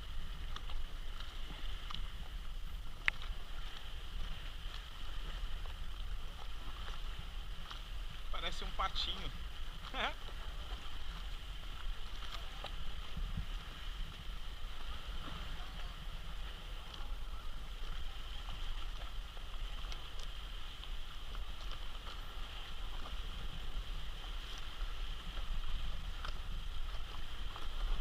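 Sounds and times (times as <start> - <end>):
water drips and splashes: 0.0 - 28.0
water lapping and trickling: 0.0 - 28.0.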